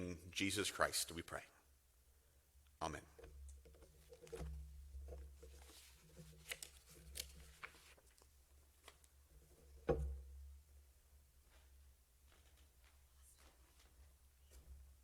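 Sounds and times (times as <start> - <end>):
faint clicks and rustles: 3.2 - 9.8, 11.4 - 15.0.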